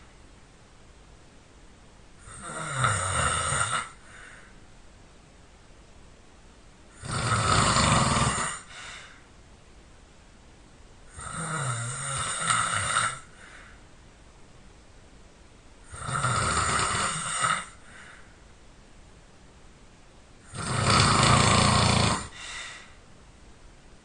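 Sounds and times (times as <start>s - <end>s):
person snoring loudly: 2.2s - 4.3s, 6.9s - 8.8s, 11.1s - 13.4s, 15.9s - 18.0s, 20.5s - 22.6s
soft breath out: 4.0s - 4.6s, 8.7s - 9.3s, 13.3s - 13.9s, 17.8s - 18.4s, 22.3s - 23.0s.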